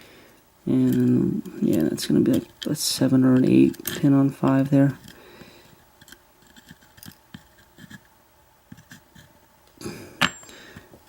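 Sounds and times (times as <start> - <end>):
small metal lock parts clicking: 0.8 - 2.7, 3.3 - 5.2.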